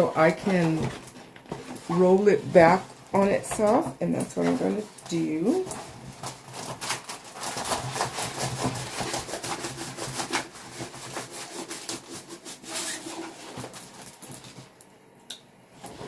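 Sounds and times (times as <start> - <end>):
canvas rubbing and crackling: 4.7 - 14.6.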